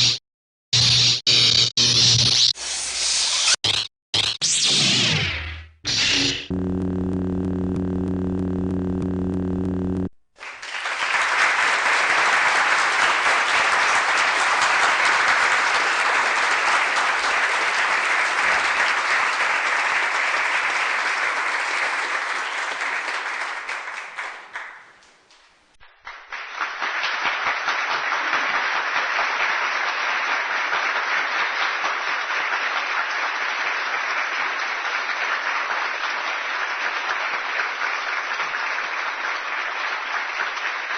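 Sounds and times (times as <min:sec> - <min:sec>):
steady low buzz: 0:05.7 - 0:10.2
crowd applauding: 0:07.6 - 0:25.1, 0:26.0 - 0:40.9.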